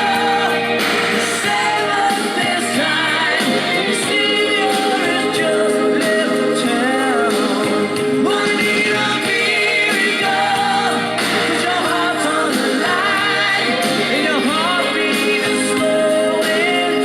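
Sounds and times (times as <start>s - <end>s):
rock song with man singing: 0.0s - 17.0s.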